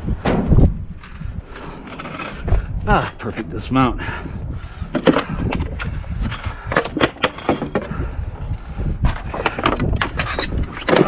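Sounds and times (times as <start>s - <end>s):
knocks and rattles: 4.9s - 11.0s.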